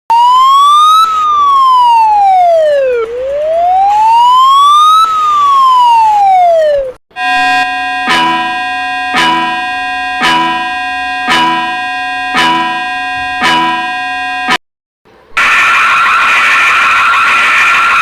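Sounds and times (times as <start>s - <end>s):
siren wailing: 0.1s - 14.6s, 15.4s - 18.0s
held chord of steady tones: 7.2s - 14.5s
struck note: 7.2s - 14.6s.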